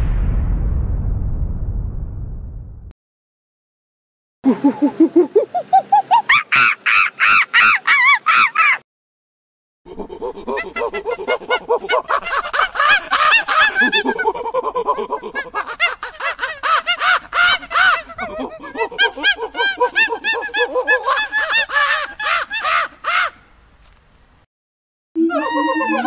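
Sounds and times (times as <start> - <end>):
monkey chattering calls: 4.5 - 8.8, 25.2 - 26.0.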